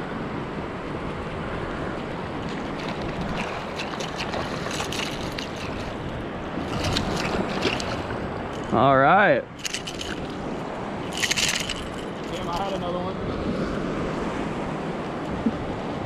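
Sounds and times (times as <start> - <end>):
surf washing: 0.0 - 16.0
wind buffeting microphone: 0.0 - 16.0
faint crackling splashes: 1.9 - 8.8, 9.5 - 12.9.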